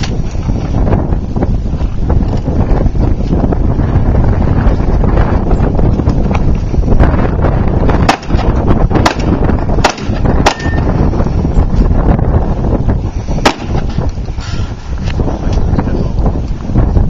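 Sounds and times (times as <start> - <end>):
wind buffeting microphone: 0.0 - 17.0
sharp gunshots: 7.9 - 10.8, 13.4 - 13.8.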